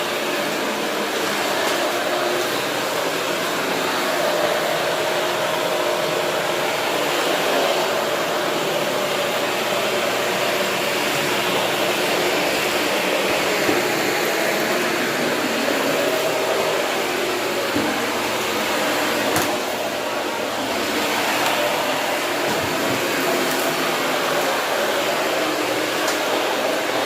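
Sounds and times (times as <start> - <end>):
vacuum cleaner running: 0.0 - 27.0.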